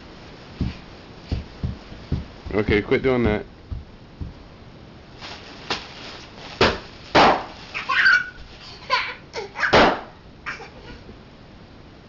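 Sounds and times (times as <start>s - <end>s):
bubble wrap popping: 5.1s - 8.6s
toddler babbling and laughing: 7.7s - 9.8s, 10.4s - 11.1s.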